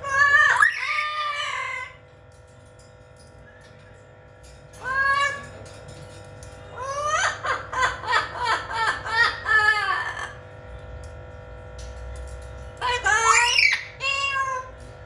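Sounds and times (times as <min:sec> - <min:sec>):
parrot wavering calls: 0:00.0 - 0:02.0, 0:04.8 - 0:05.6, 0:06.7 - 0:10.4, 0:12.8 - 0:14.8.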